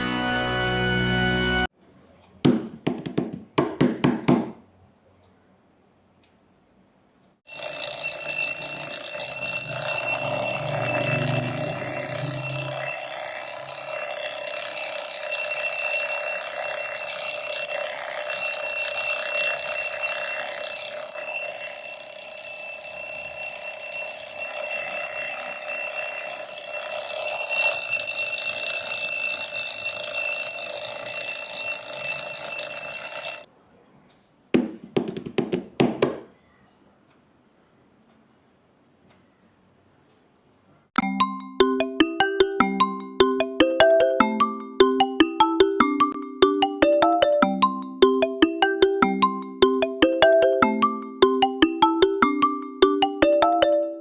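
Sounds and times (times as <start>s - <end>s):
alarm clock ringing: 7.5s - 33.5s, 41.2s - 54.0s.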